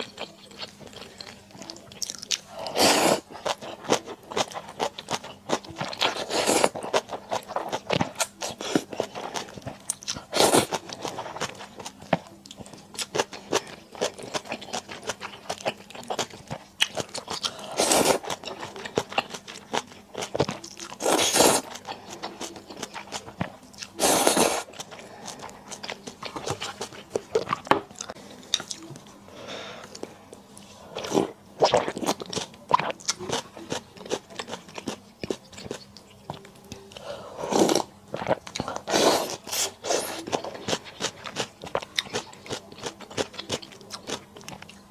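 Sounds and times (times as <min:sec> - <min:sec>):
crunchy chewing: 0:00.0 - 0:29.2, 0:29.8 - 0:44.9.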